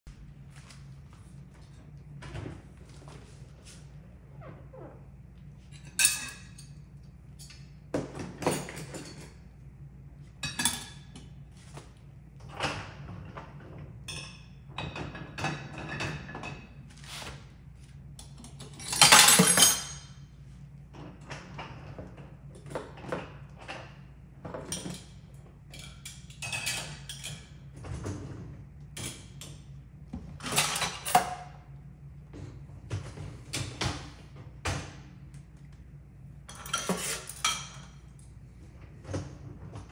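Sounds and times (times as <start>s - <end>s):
dishes and cutlery clinking: 24.6s - 27.6s, 36.5s - 38.1s.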